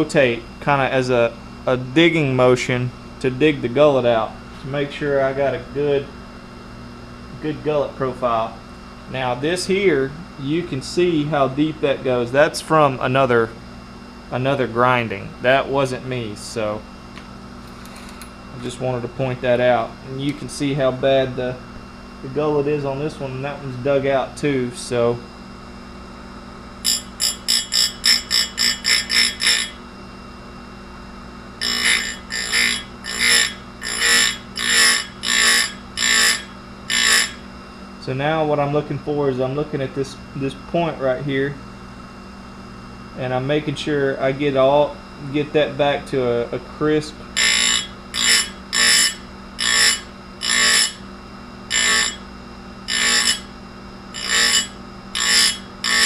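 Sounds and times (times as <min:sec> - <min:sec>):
steady grinder hum: 0:00.0 - 0:56.0
grinding wheel rasping on chain: 0:26.8 - 0:29.8, 0:31.6 - 0:37.4, 0:47.4 - 0:51.0, 0:51.7 - 0:52.2, 0:52.9 - 0:53.5, 0:54.2 - 0:56.0
shrill grinding screech: 0:31.6 - 0:37.4, 0:54.2 - 0:56.0.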